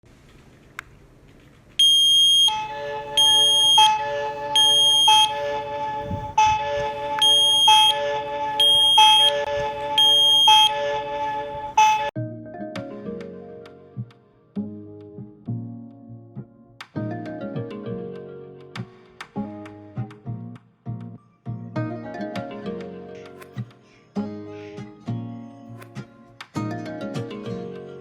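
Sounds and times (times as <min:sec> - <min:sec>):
smoke alarm beeping: 0:01.8 - 0:06.6, 0:07.2 - 0:12.1
background music: 0:02.2 - 0:28.0.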